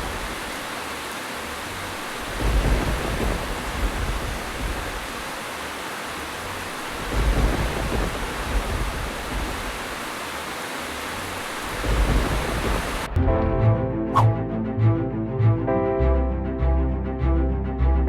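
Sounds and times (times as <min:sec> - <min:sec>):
steady rain hiss: 0:00.0 - 0:13.2
rolling thunder: 0:02.2 - 0:05.4, 0:06.9 - 0:10.1, 0:11.6 - 0:13.7.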